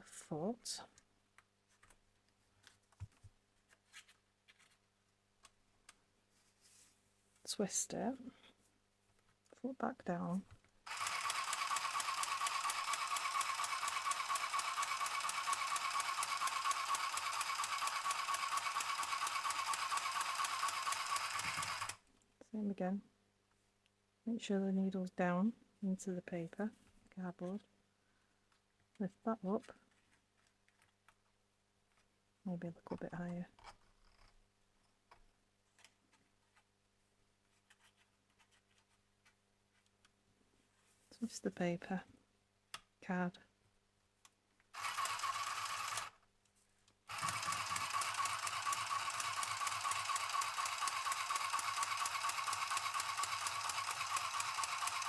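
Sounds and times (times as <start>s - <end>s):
sewing machine whirring: 10.9s - 22.1s, 44.8s - 46.2s, 47.1s - 55.0s.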